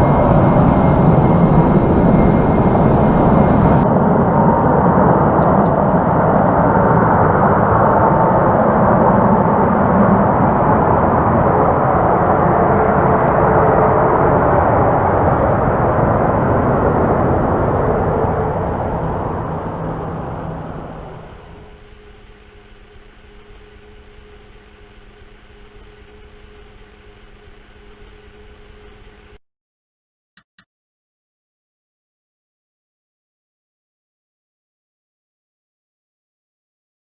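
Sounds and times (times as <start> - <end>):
aircraft engines passing: 0.0 - 29.4.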